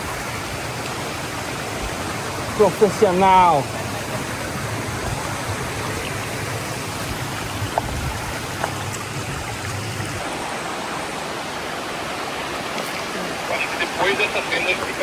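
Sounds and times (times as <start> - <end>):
waterfall rushing: 0.0 - 15.0.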